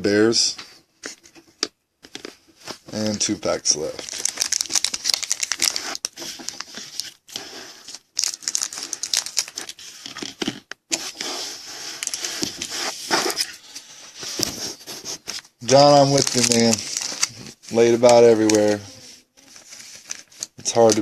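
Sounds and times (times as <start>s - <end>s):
card pack wrapper tearing and crinkling: 3.8s - 13.5s, 15.3s - 18.8s, 19.4s - 21.0s.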